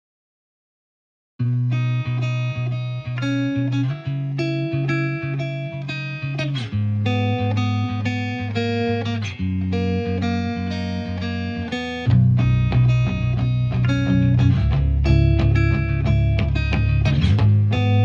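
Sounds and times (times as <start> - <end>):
plucked guitar melody: 1.4 - 18.0
sustained low bass notes: 12.1 - 18.0.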